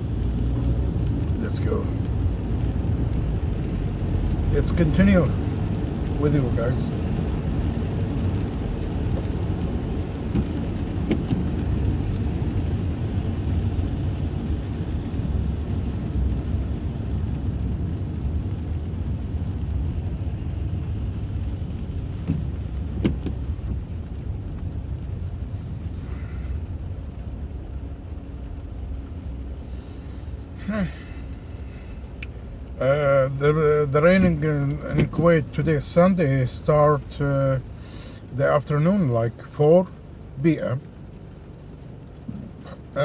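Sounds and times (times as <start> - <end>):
car engine and road noise: 0.0 - 43.0.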